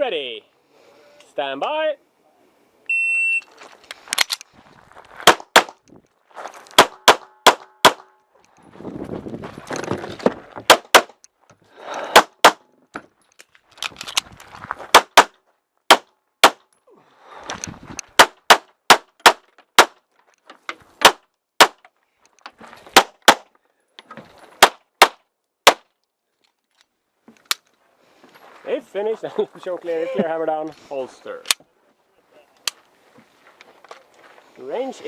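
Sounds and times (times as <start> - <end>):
handgun shots: 5.2 - 5.8, 6.8 - 8.1, 15.9 - 16.6, 24.6 - 25.9.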